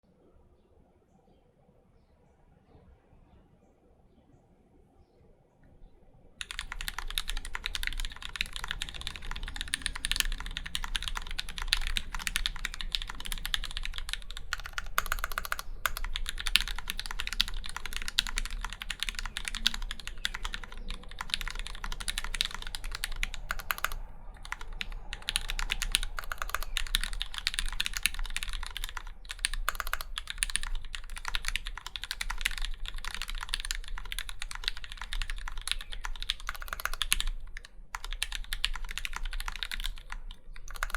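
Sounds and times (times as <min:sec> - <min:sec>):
mechanical keyboard typing: 0:06.4 - 0:40.9.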